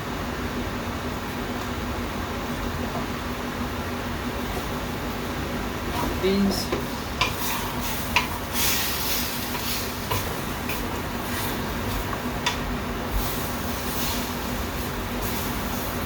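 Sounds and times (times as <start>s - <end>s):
steady background hum: 0.0s - 16.0s.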